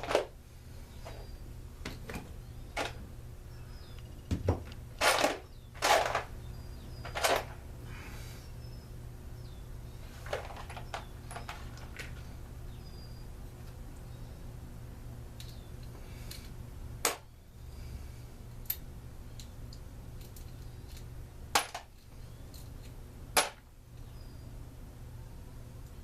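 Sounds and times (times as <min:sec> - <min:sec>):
steady low hum: 0:00.0 - 0:26.0
metal parts clicking and clinking: 0:05.0 - 0:06.4, 0:07.0 - 0:07.6, 0:10.2 - 0:12.2, 0:20.2 - 0:23.6.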